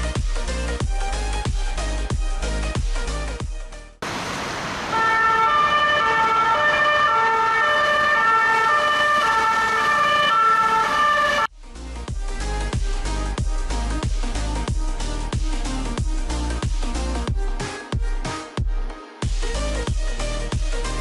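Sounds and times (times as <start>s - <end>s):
electronic siren: 4.8s - 11.5s.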